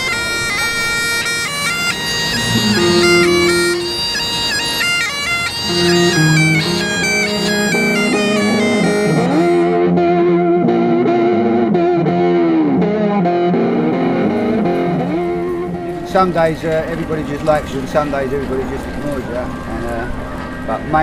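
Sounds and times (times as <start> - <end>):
wind instrument melody: 0.0 - 10.1
electric guitar wavering notes: 1.0 - 16.1.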